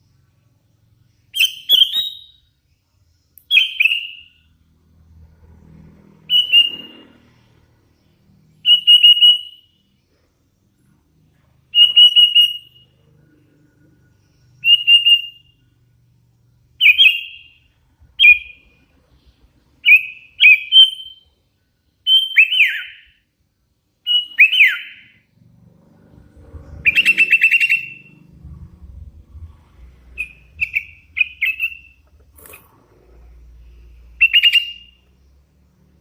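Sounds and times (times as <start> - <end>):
bird whistling calls: 1.3 - 2.4, 6.3 - 7.0, 8.6 - 9.7, 11.7 - 12.9, 14.6 - 15.6, 19.8 - 21.2, 24.1 - 25.2, 26.8 - 28.1, 30.2 - 32.6, 34.2 - 35.0.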